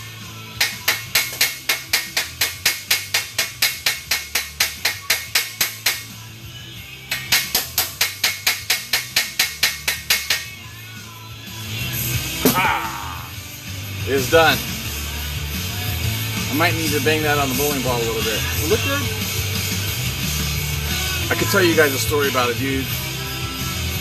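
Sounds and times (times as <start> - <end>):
hammer peening a rivet: 0.6 - 6.1, 7.1 - 10.5.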